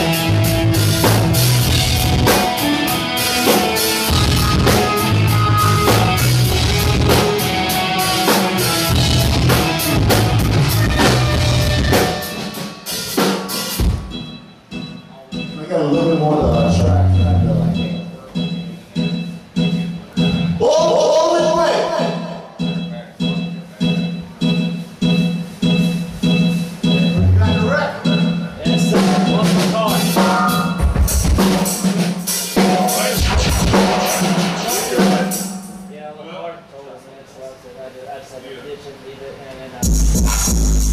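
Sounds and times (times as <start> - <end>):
punk rock band playing live: 0.0 - 18.5, 25.0 - 35.9
drum kit beating: 0.0 - 36.1, 39.8 - 40.9.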